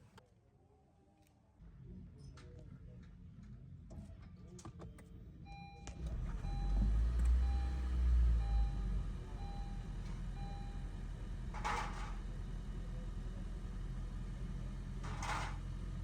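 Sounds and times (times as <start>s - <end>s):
dashboard warning chime beeping: 5.5s - 12.0s
car engine rumbling: 5.5s - 16.0s.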